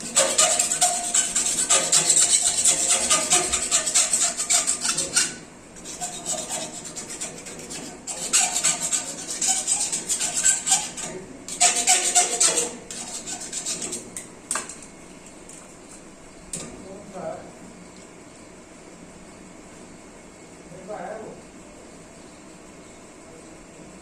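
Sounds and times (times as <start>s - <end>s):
rapid rasping rubbing strokes: 0.0s - 14.2s.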